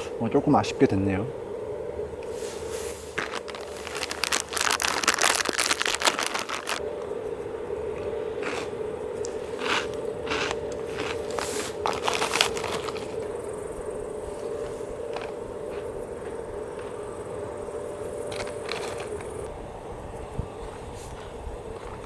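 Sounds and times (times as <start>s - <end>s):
steady low hum: 0.0s - 4.4s, 6.8s - 22.0s
crinkling and rustling: 2.2s - 6.9s, 10.9s - 13.4s.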